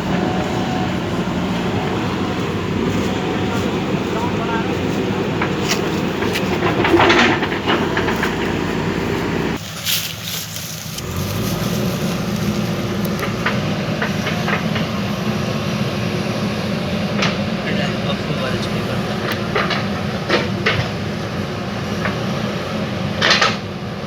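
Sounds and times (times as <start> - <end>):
diesel engine running: 0.0 - 24.0
metallic clanks and knocks: 2.0 - 9.6.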